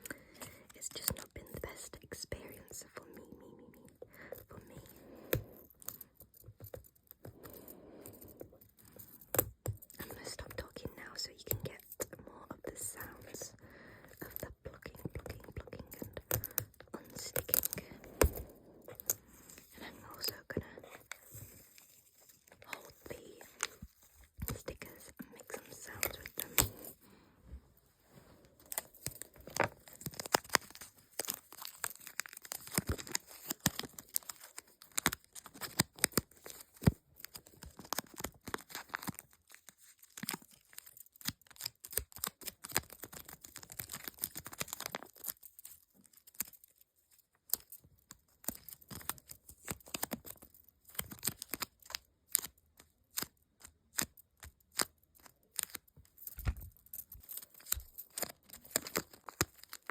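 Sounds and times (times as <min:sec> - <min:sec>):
paper crinkling: 0:14.2 - 0:27.2, 0:28.1 - 0:59.9.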